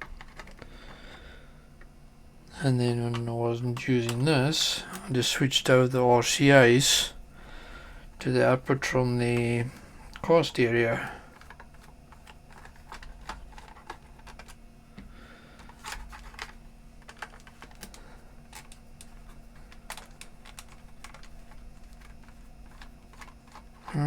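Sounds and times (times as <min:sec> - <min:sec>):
plastic case being handled: 0:00.0 - 0:01.2, 0:08.2 - 0:24.0.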